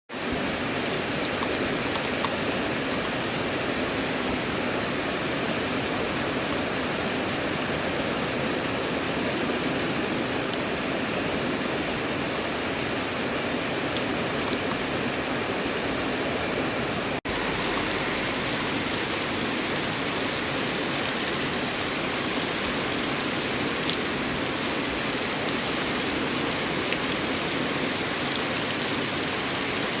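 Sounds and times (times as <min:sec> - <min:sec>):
steady rain falling: 0:00.1 - 0:30.0
raindrop ticks: 0:01.2 - 0:02.6.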